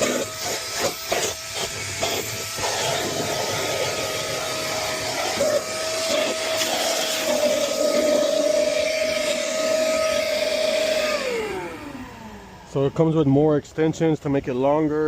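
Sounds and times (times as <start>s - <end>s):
wet dry vacuum running: 0.0s - 13.6s.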